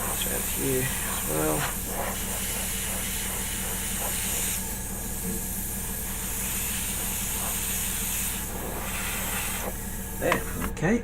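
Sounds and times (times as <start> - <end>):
airbrush hissing: 0.0 - 10.7
steady low hum: 0.0 - 11.0.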